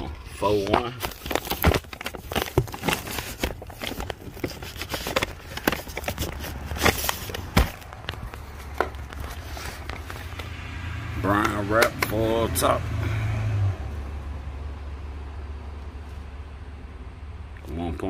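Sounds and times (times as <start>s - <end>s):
cardboard boxes handled: 0.4s - 10.4s.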